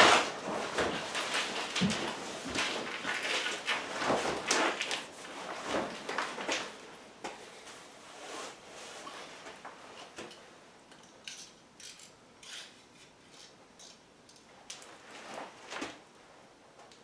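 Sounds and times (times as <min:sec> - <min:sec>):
plastic sheeting crinkling: 0:00.0 - 0:07.0.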